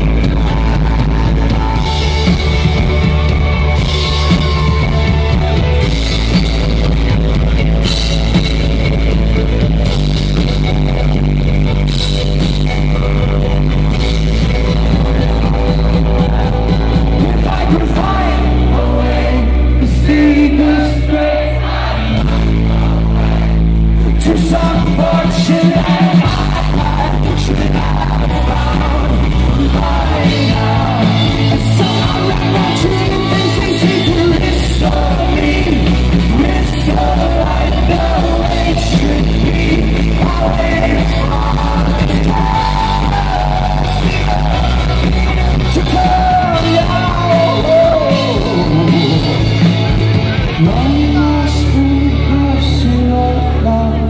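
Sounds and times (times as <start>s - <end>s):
lead singer singing: 0.0s - 7.4s, 13.6s - 54.0s
live rock band playing: 0.0s - 54.0s.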